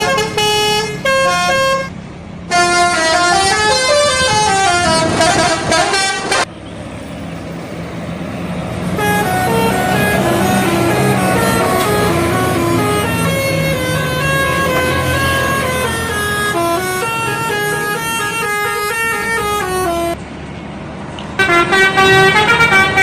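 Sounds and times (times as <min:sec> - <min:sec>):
multi-tone melody horn: 0:00.0 - 0:01.9, 0:02.5 - 0:06.5, 0:09.0 - 0:20.2, 0:21.4 - 0:23.0
low engine hum: 0:06.4 - 0:21.5.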